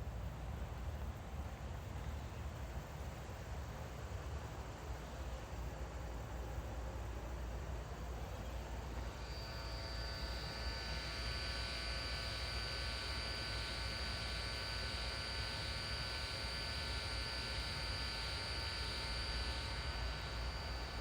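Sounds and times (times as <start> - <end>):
loudspeaker electrical buzz: 9.2 - 21.0.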